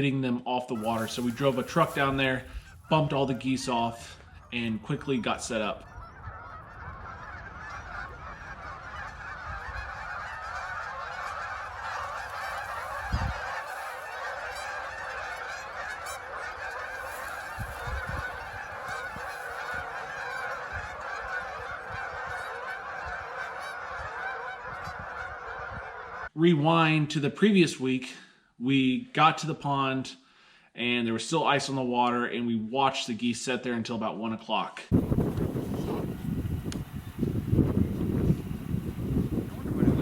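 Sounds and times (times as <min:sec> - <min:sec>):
flock of geese honking: 0:00.8 - 0:26.4, 0:34.9 - 0:40.0
low bumps: 0:34.9 - 0:40.0.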